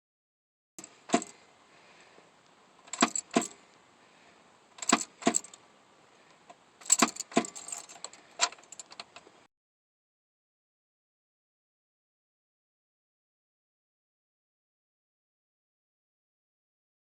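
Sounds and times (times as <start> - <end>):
metallic clicks with jingling keys: 2.9 - 3.6, 4.8 - 5.6, 6.8 - 9.0.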